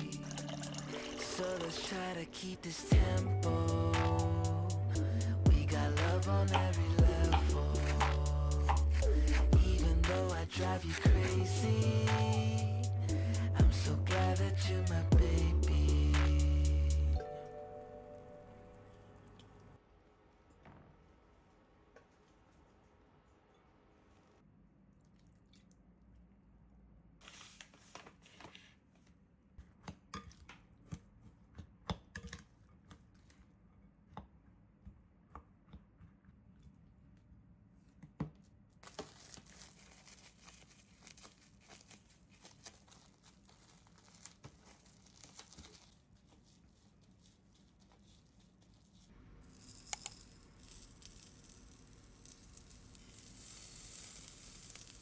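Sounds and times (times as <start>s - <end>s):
tearing and crinkling: 38.8s - 52.8s.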